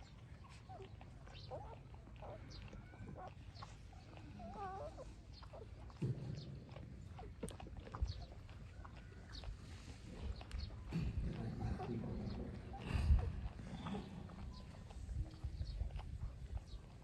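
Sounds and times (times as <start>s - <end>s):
puppies whimpering and squeaking: 0.0s - 6.0s.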